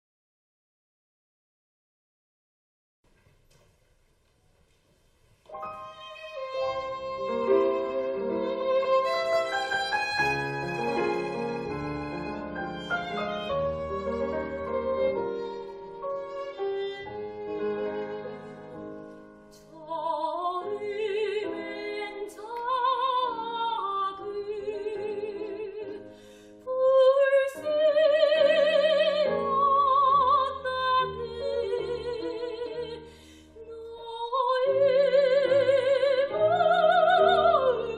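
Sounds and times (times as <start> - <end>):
soprano singing with violin and piano: 5.6 - 37.9.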